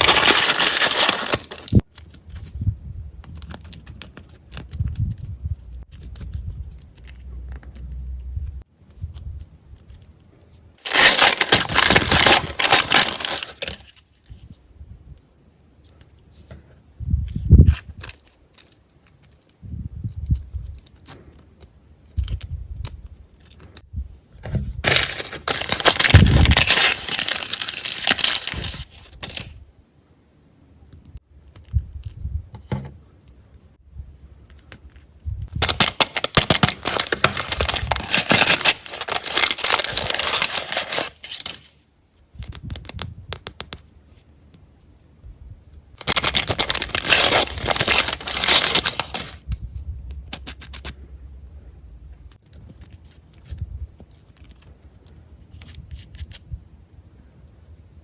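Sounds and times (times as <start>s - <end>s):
plastic packaging crinkling and tearing: 0.0s - 7.8s, 10.8s - 14.4s, 24.8s - 29.6s, 35.6s - 41.8s, 46.0s - 49.5s, 52.4s - 56.5s
quiet rustling and handling: 48.7s - 56.6s.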